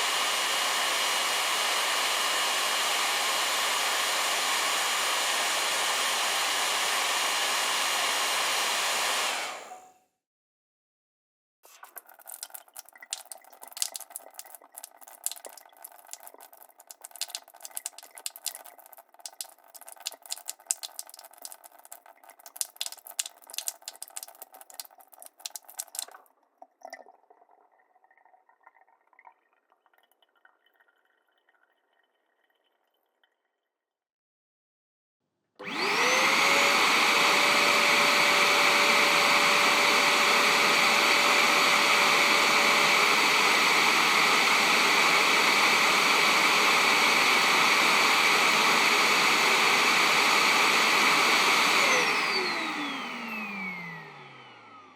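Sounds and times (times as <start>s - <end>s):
appliance motor whine: 0.0s - 9.9s, 35.6s - 54.9s.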